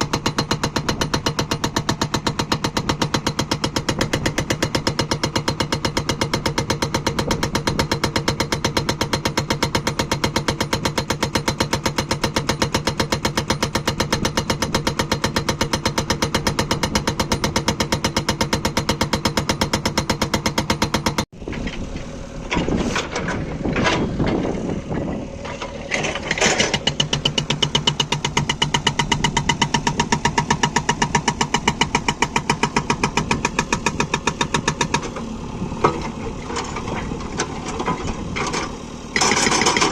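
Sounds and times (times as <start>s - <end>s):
hydraulic breaker hammering stone: 0.0s - 21.3s, 25.8s - 35.2s, 35.8s - 39.9s
diesel engine under load: 0.0s - 39.9s
metal clanking: 21.4s - 39.9s.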